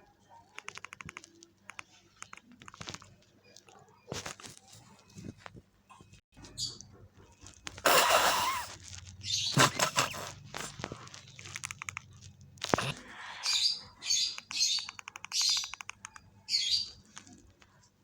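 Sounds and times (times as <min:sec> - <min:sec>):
bird-like chirps: 0:09.2 - 0:10.3, 0:12.8 - 0:17.4.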